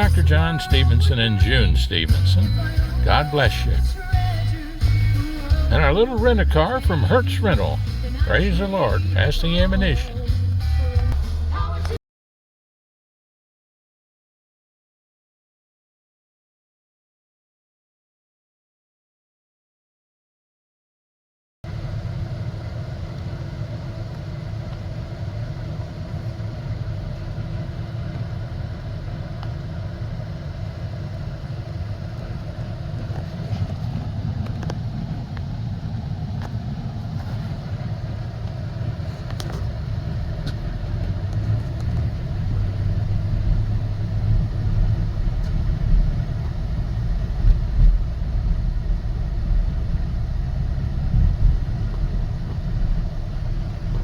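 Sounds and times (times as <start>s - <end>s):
car engine and road noise: 0.0s - 12.0s, 21.7s - 54.0s.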